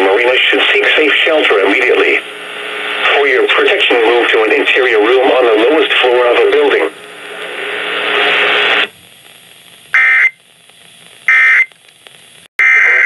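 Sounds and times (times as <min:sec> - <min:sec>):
radio hiss: 0:00.0 - 0:13.0
high buzzing data bursts: 0:09.9 - 0:10.4, 0:11.3 - 0:11.7.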